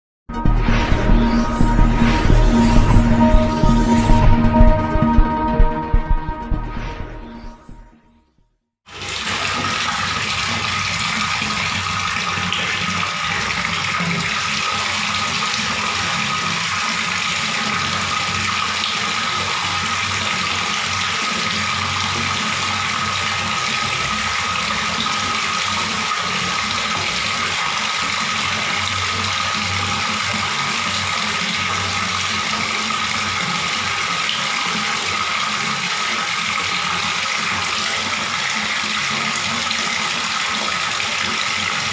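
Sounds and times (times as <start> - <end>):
water running from a tap: 8.9 - 41.9.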